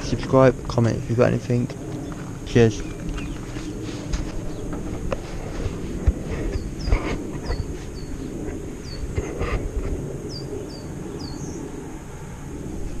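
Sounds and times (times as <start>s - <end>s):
steady low rumble: 0.0s - 13.0s
small bird chirping: 2.0s - 3.8s, 6.4s - 9.1s, 10.2s - 11.7s.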